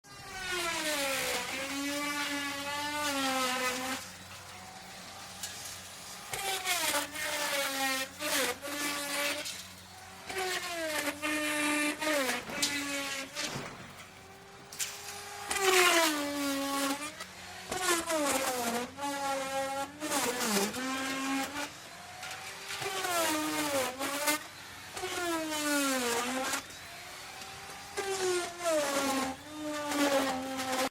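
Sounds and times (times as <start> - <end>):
electric wood router cutting wood: 0.0 - 30.9.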